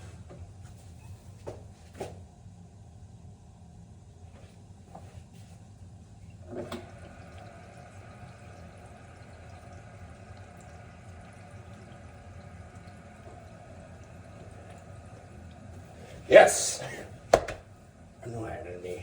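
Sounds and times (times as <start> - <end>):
water running through pipes: 4.3 - 19.0.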